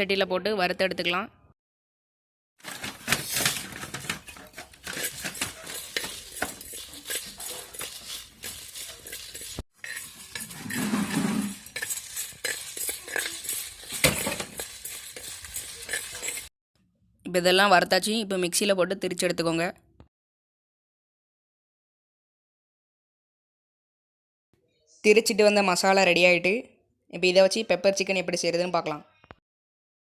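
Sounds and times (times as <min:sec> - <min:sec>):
spices being stirred: 0:02.8 - 0:16.5
utensil clinking and scraping pot: 0:03.3 - 0:16.5.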